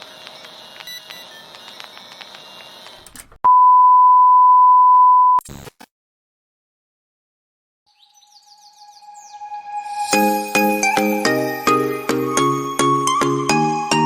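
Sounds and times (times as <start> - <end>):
electronic beep tone: 3.5 - 5.4
music with high chirps: 8.4 - 14.0.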